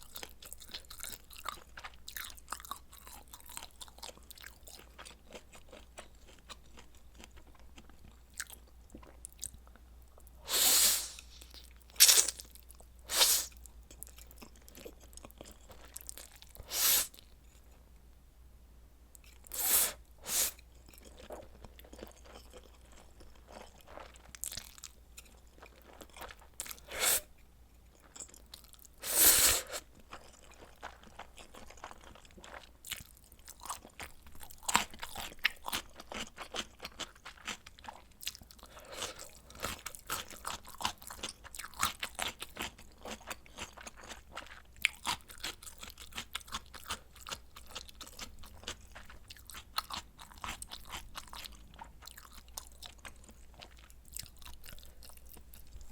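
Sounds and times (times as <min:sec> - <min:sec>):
crunchy chewing: 0:00.0 - 0:17.8, 0:19.2 - 0:55.9
crunchy bites: 0:11.0 - 0:12.6.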